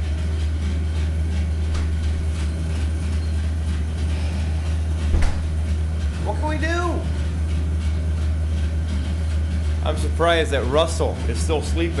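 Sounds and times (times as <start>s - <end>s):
air conditioning humming: 0.0s - 12.0s
brief knock: 5.1s - 5.6s.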